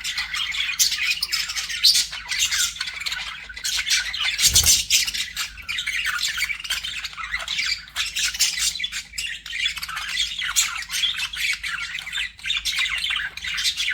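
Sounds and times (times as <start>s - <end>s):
budgerigars chattering: 4.4s - 5.3s.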